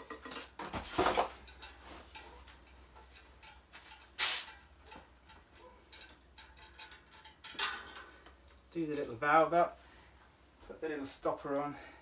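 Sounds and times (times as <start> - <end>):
short hiss of air: 4.2 - 4.5.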